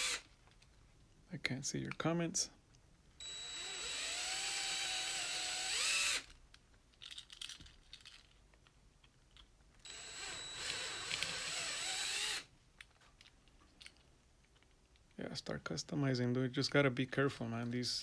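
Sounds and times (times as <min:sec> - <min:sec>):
cordless drill drilling rivets: 0:00.0 - 0:00.3, 0:03.2 - 0:06.4, 0:09.8 - 0:12.5.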